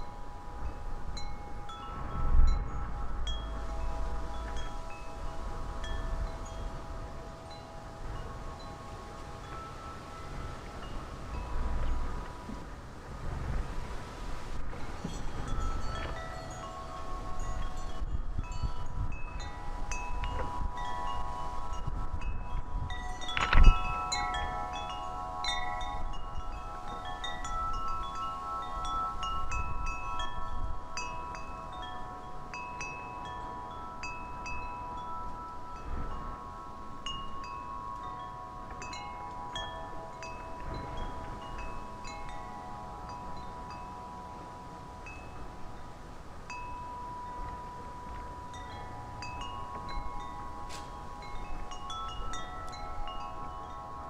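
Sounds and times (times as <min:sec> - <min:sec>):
wind chimes ringing: 0:00.0 - 0:54.0
wind rumbling on microphone: 0:00.0 - 0:54.0.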